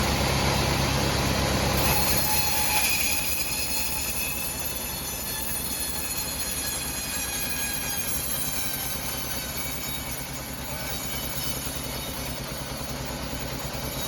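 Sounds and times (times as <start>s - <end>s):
low machine hum: 0.0s - 5.2s
saw blade screeching in wood: 1.6s - 14.0s.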